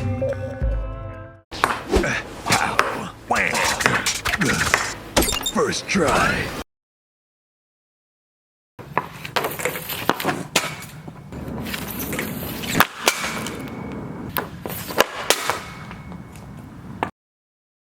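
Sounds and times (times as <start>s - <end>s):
hockey stick hitting puck: 1.6s - 4.9s, 8.8s - 16.4s.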